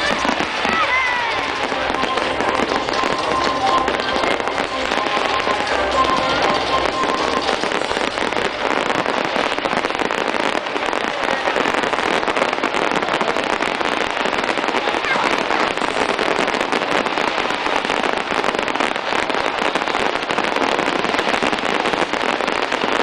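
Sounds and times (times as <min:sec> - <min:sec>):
fireworks crackling and banging: 0:00.0 - 0:23.0
music: 0:01.4 - 0:09.3.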